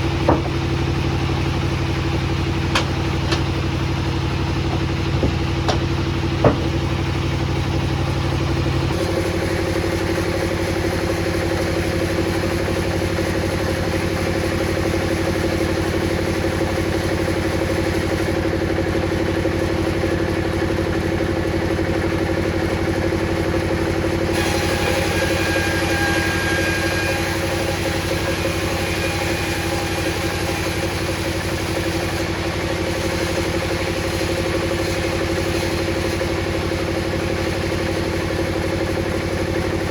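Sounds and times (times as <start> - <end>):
table saw motor running: 0.0 - 17.3, 21.5 - 39.9
sharp knocks: 0.2 - 0.6, 2.7 - 3.5, 4.7 - 6.9.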